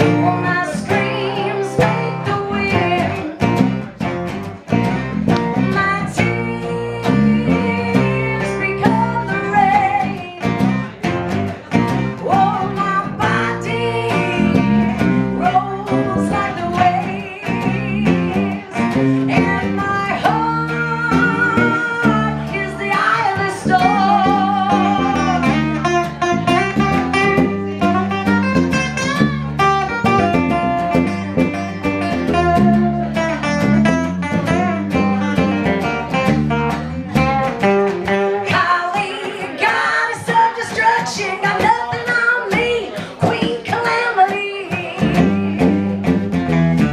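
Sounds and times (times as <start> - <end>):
woman singing with vibrato: 0.0 - 3.4, 5.6 - 11.0, 12.1 - 25.7, 38.2 - 46.0
strummed acoustic guitar: 0.0 - 46.9.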